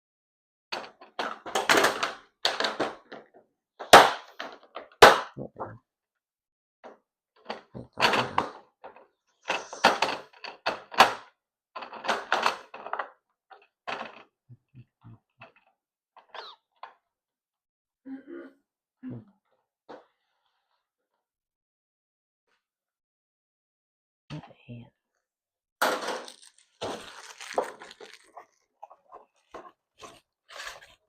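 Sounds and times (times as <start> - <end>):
packaging rustling and crinkling: 26.0 - 31.0.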